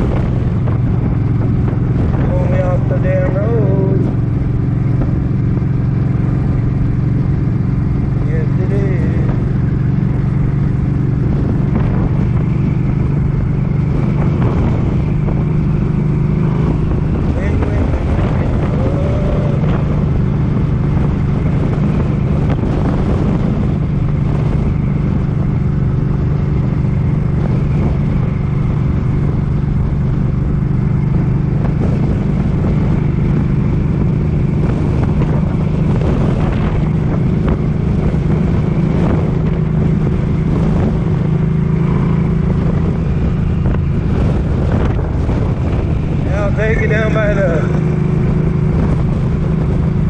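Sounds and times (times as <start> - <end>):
motorcycle engine running: 0.0 - 50.0
wind noise on microphone: 0.0 - 50.0.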